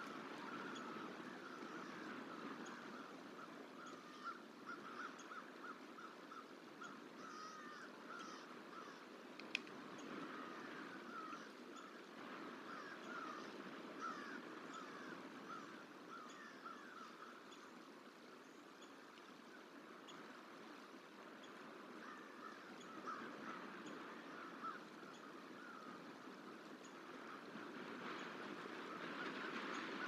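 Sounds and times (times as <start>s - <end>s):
faint steady outdoor rush: 0.0s - 30.0s.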